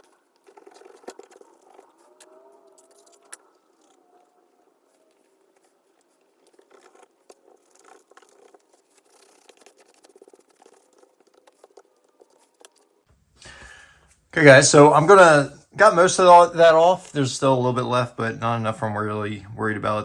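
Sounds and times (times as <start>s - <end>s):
faint scratching and clicks: 0.0s - 15.2s.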